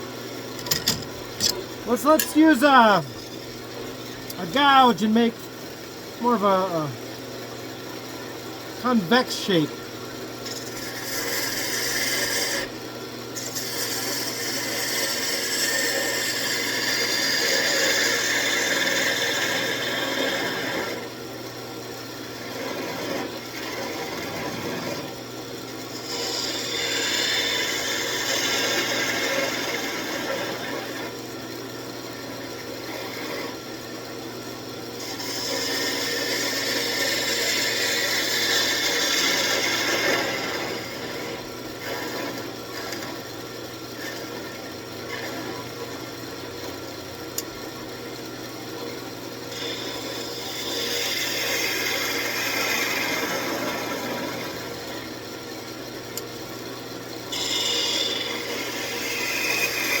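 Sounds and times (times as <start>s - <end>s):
gouge cutting wood: 10.5s - 12.7s, 13.4s - 19.6s, 57.3s - 60.0s
lathe motor hum: 25.9s - 31.2s, 35.0s - 43.2s, 57.3s - 60.0s.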